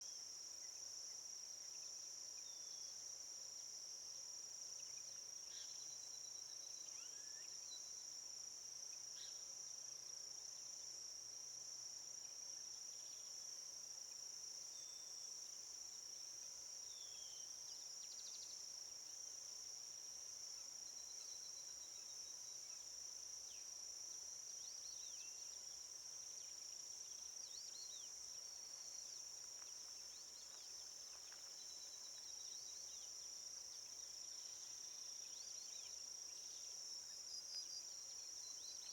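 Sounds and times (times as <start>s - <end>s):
insects droning: 11.6s - 38.9s.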